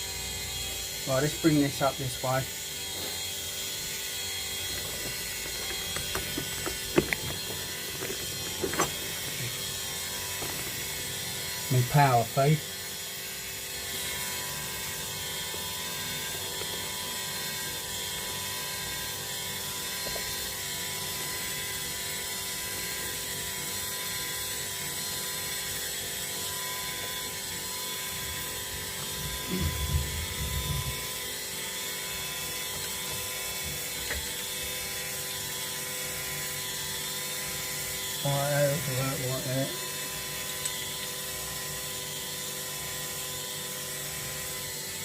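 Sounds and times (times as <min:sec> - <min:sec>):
lathe whirring: 0:00.0 - 0:19.0.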